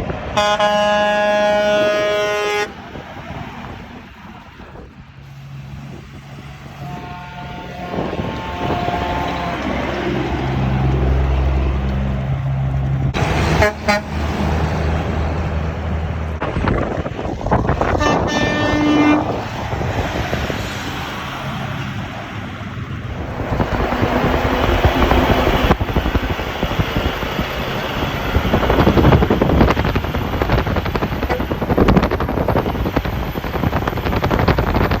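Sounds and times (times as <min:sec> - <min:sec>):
trucks driving past: 0:00.0 - 0:35.0
short horn toot: 0:00.4 - 0:02.8, 0:13.5 - 0:14.2, 0:17.9 - 0:19.4.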